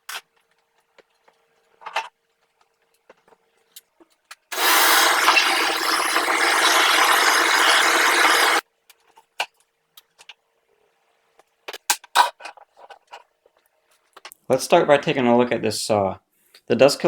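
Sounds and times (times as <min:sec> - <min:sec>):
miter saw cutting wood: 0:04.5 - 0:08.6.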